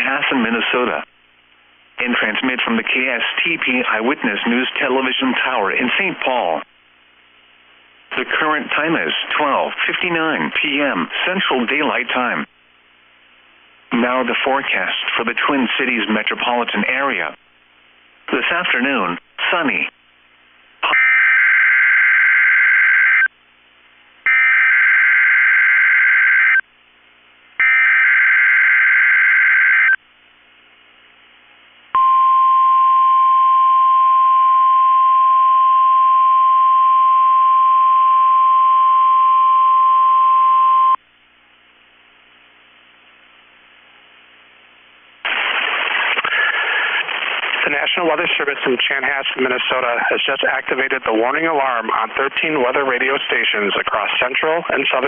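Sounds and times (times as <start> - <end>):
steady warning alarm tone: 24.3 - 26.6, 27.6 - 30.0.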